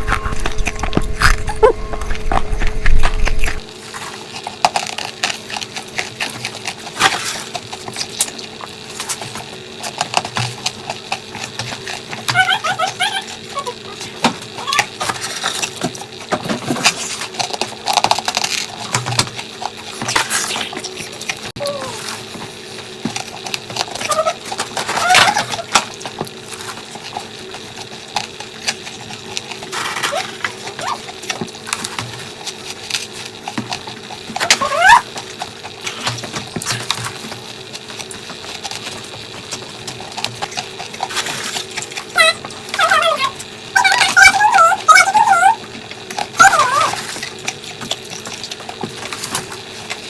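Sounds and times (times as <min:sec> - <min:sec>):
low rumble: 0:00.0 - 0:03.6.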